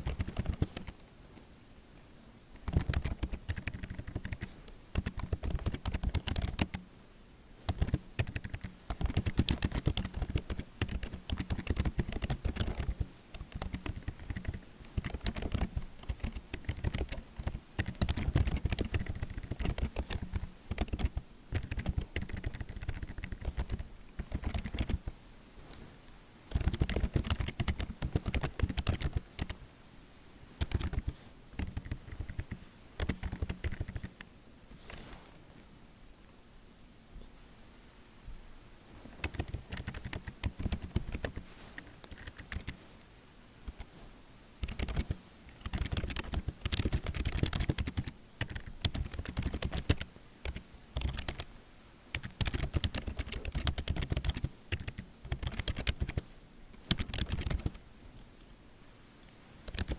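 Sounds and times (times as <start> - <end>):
computer keyboard typing: 0.0 - 1.0, 2.6 - 6.8, 7.6 - 25.2, 26.5 - 29.6, 30.6 - 34.2, 39.2 - 42.8, 44.6 - 51.5, 52.1 - 56.2, 56.8 - 57.8, 59.7 - 59.9.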